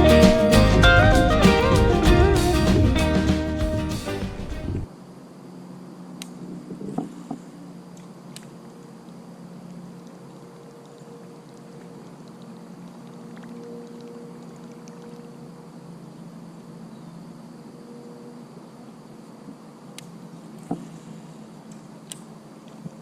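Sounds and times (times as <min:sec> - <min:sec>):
faint steady hum: 0:04.6 - 0:23.0
water trickling and lapping: 0:07.0 - 0:16.9.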